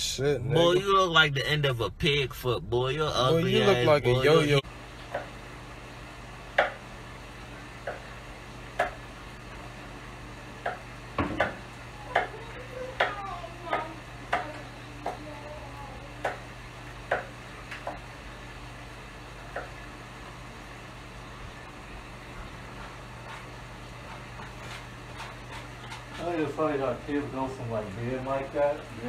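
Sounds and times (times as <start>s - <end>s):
steady low hum: 0.0s - 29.0s
utensil knocking and scraping in pan: 22.7s - 26.5s.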